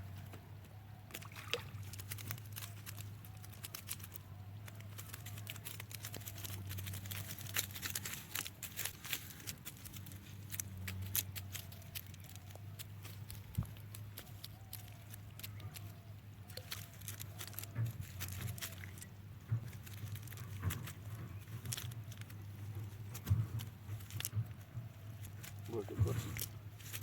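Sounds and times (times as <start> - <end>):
small clicks and slaps: 1.1 - 27.0
water splashing and trickling: 1.1 - 27.0.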